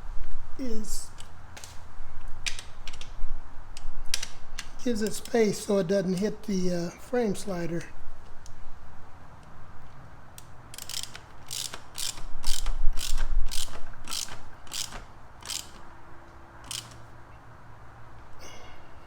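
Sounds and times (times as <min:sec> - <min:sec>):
hand ratchet clicking: 0:10.4 - 0:15.9, 0:16.6 - 0:17.1.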